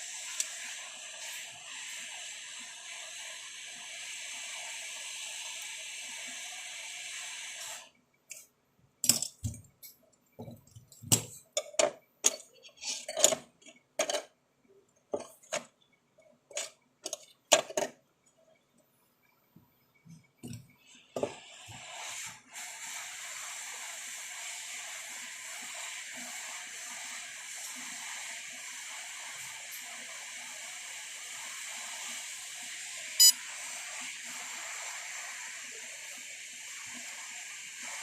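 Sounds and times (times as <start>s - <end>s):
hot air blower hissing: 0.0s - 7.9s, 20.9s - 38.0s.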